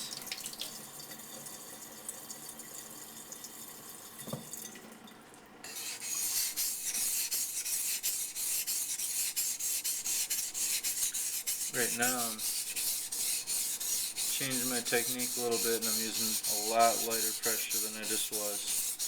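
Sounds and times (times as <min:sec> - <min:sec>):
knife scraping on whetstone: 0:05.7 - 0:19.0.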